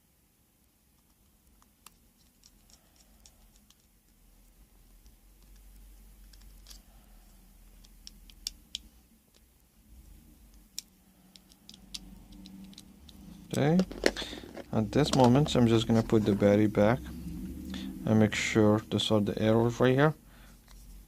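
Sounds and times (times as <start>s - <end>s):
clicks of phone parts and tools: 10.7s - 13.2s.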